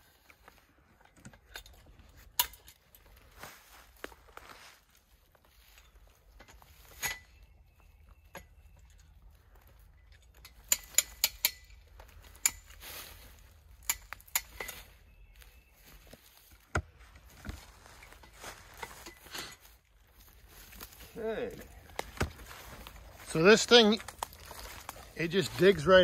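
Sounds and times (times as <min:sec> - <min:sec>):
metal rigging gear clinking: 0:01.0 - 0:03.2, 0:05.8 - 0:07.4, 0:08.3 - 0:15.0.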